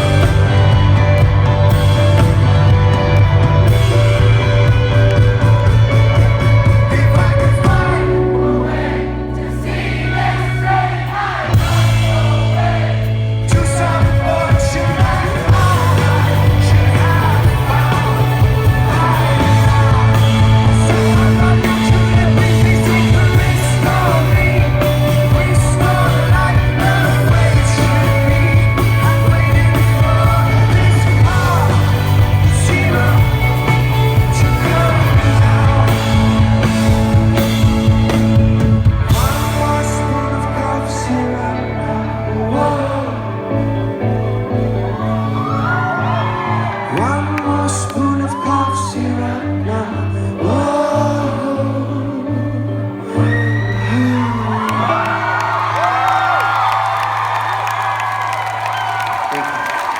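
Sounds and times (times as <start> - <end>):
live rock band with lead vocal: 0.0 - 59.9.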